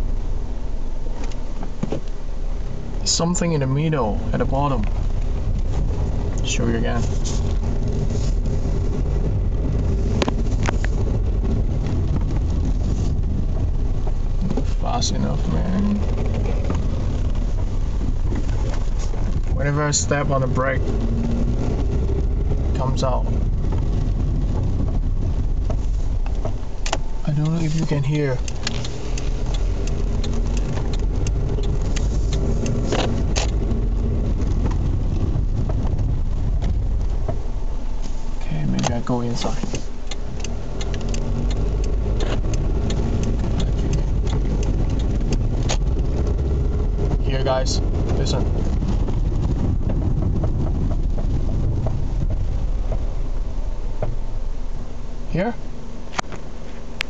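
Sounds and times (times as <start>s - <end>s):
low road rumble in car cabin: 0.0s - 57.0s
knocking from underneath car: 23.4s - 38.1s, 41.0s - 54.3s.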